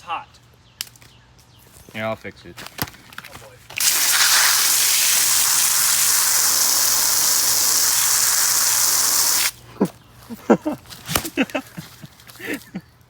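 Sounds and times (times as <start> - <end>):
fire extinguisher hissing: 3.8 - 9.6.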